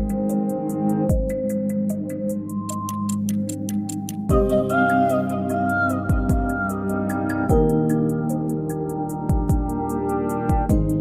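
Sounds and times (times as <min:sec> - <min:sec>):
hi-hat ticking: 0:00.0 - 0:11.0
deep kick drum: 0:01.1 - 0:01.5, 0:04.3 - 0:04.7, 0:06.1 - 0:06.6, 0:07.5 - 0:07.9, 0:09.3 - 0:11.0.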